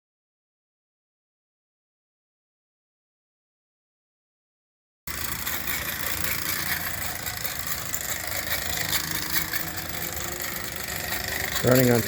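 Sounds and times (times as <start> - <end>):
toy steam engine clatter and hiss: 5.1 - 12.0.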